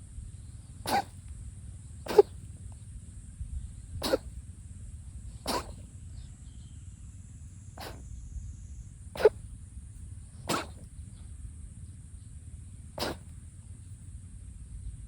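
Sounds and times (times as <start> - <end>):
cat sneezing: 0.8 - 1.2, 2.1 - 2.4, 4.0 - 4.4, 5.4 - 5.9, 7.8 - 8.0, 9.2 - 9.4, 10.5 - 10.9, 13.0 - 13.3.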